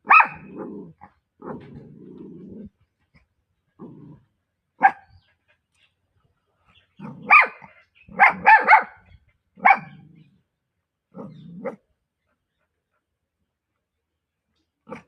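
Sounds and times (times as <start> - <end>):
puppy barking: 0.0 - 0.7, 4.8 - 5.2, 7.0 - 9.0, 9.6 - 10.0.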